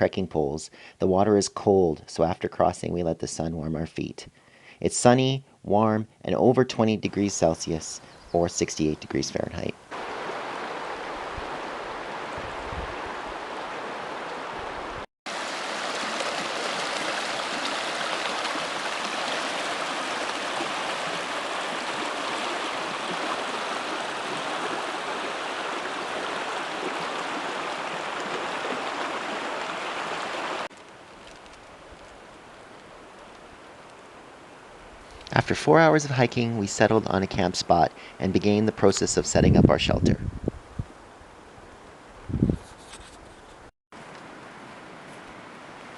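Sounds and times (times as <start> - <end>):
rushing creek water: 8.9 - 38.1, 44.0 - 45.9.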